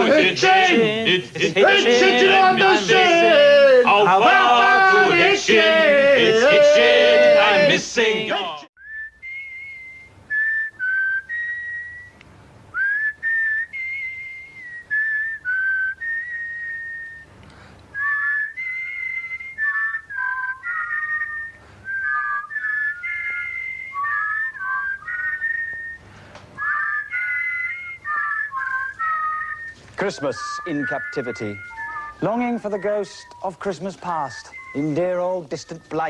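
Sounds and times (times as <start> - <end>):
harmony whistling: 0.0 - 17.3, 17.9 - 36.0
whistled tune: 8.8 - 17.3, 17.9 - 36.0.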